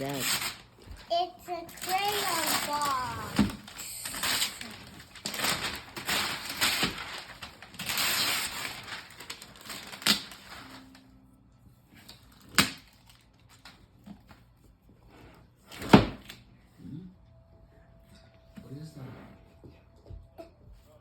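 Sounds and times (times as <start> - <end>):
wrapping paper crinkling and tearing: 0.0 - 11.1, 12.0 - 13.8.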